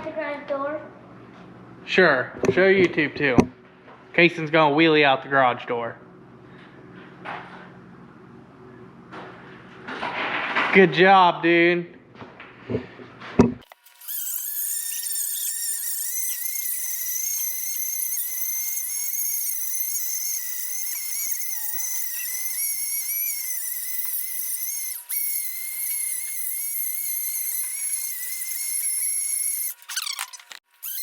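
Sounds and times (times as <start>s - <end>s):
power tool whining: 13.6s - 31.0s.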